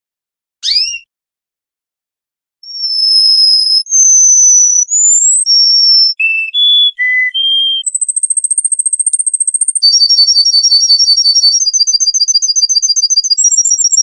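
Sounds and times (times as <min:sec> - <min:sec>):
songbird whistling notes: 0:00.6 - 0:01.1, 0:02.6 - 0:14.0
bird rapid high trill: 0:02.7 - 0:14.0.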